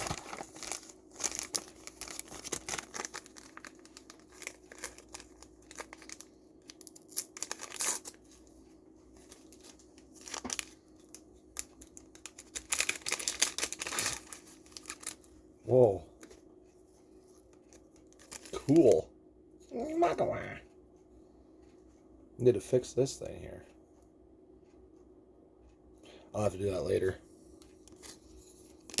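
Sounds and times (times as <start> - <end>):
packaging crinkling and tearing: 0.0 - 8.6, 9.2 - 15.3, 17.7 - 19.0, 28.8 - 29.0.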